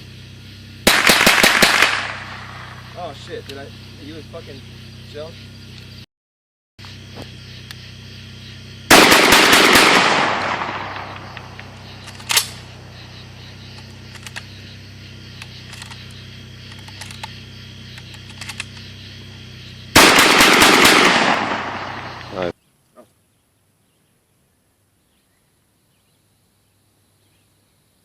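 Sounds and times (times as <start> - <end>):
loud gunshot echoing: 0.8 - 2.9, 8.9 - 11.6, 20.0 - 22.3.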